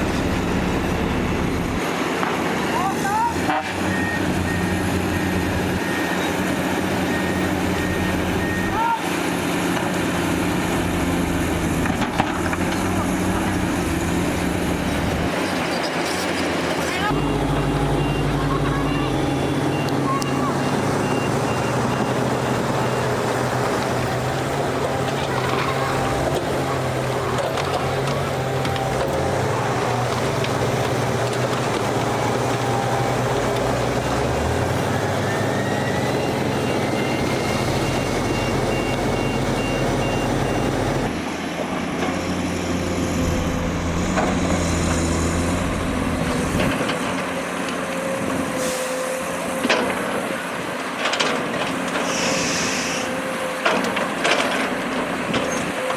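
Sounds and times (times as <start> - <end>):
heavy diesel engines running: 0.0 - 55.9
reversing alarm beeping: 17.0 - 23.4, 34.4 - 41.2.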